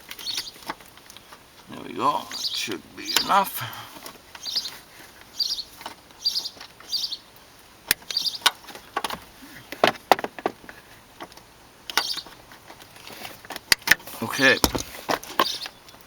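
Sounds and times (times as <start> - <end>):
bird chirping: 1.8 - 3.8, 4.4 - 7.3, 8.1 - 8.5, 12.0 - 12.3
sharp clicks and knocks: 14.6 - 15.0.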